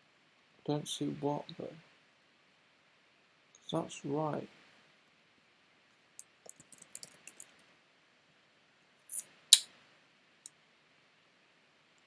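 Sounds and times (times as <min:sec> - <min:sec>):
keyboard and mouse clicks: 0:06.5 - 0:07.5.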